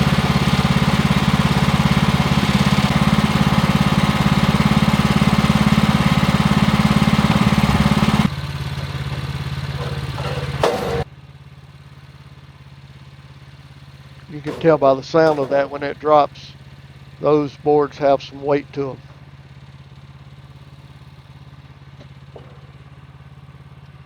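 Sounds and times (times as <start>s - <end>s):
sawmill engine running under load: 0.0s - 24.0s
bandsaw blade cutting wood: 9.7s - 11.1s, 14.3s - 16.6s.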